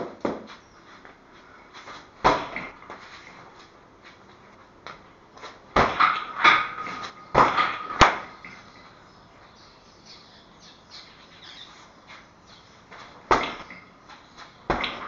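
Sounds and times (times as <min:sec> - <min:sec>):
sharp knocks: 0:05.7 - 0:08.4, 0:13.3 - 0:13.8.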